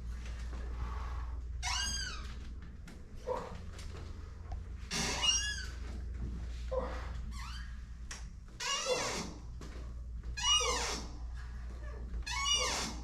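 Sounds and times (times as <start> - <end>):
treatment table squeaking: 4.8 - 6.3, 7.3 - 13.0.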